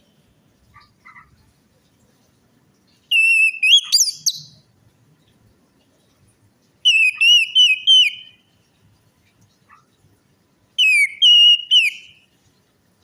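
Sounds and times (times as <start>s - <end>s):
thrush singing whistled notes: 3.1s - 4.6s, 6.8s - 8.5s, 10.8s - 12.3s.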